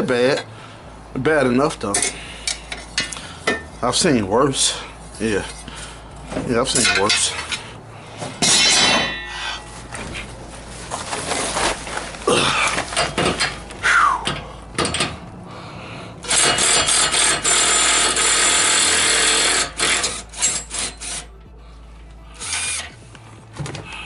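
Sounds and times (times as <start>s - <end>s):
power drill running: 16.2s - 21.2s.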